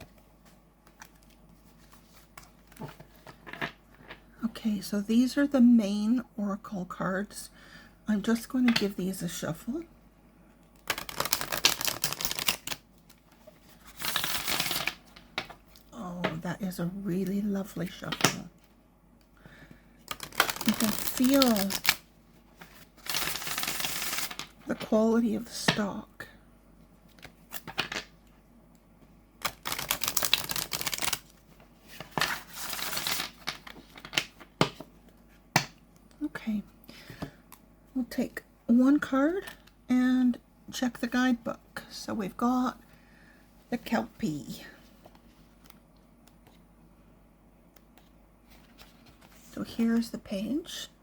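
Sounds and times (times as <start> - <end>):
cards being shuffled: 10.8 - 15.6, 20.1 - 22.0, 22.6 - 24.5, 29.4 - 34.8
cards sliding rustle: 29.4 - 34.8.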